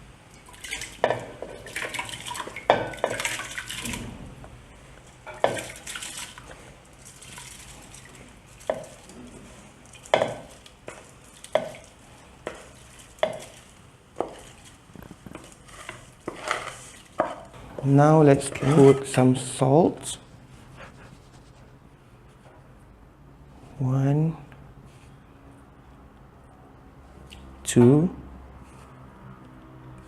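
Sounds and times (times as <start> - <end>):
water poured into a pot: 0.4 - 4.0, 5.4 - 9.1
spoon stirring rice: 6.4 - 19.2.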